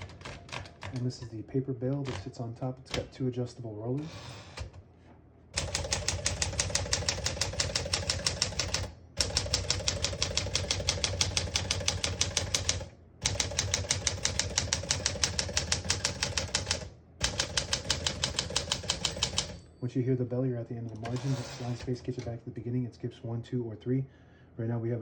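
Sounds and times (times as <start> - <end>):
manual typewriter typing: 0.0 - 1.3, 1.9 - 3.2, 5.6 - 19.6, 20.9 - 22.3.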